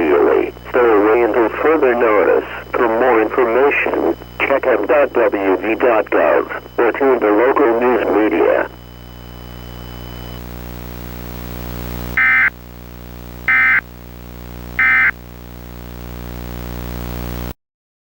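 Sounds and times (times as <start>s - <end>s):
low buzzing hum: 0.0s - 17.6s
digital data tones: 12.2s - 12.5s, 13.5s - 13.8s, 14.8s - 15.2s.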